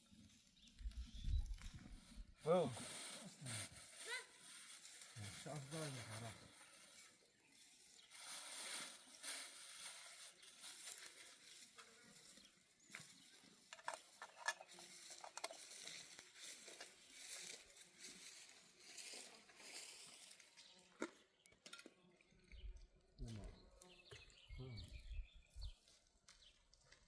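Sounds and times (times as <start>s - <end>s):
stalks rustling and crackling: 12.9s - 20.6s.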